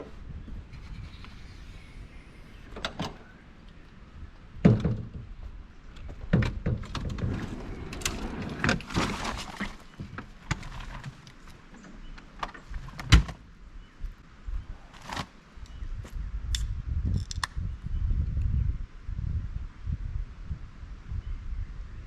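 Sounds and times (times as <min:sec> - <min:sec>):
knocks and thumps of handling: 0:04.6 - 0:07.5.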